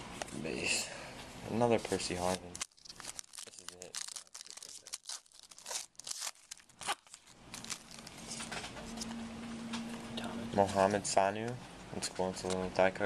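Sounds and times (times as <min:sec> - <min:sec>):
faint steady hum: 0:00.0 - 0:13.0
wrapper tearing and crinkling: 0:01.9 - 0:08.6.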